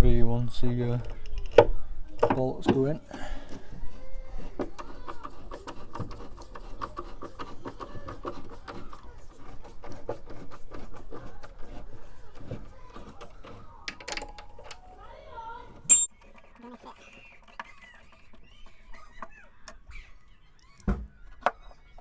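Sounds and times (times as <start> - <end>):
effortful breathing: 3.0 - 4.1
metal parts clicking and knocking: 15.9 - 16.1.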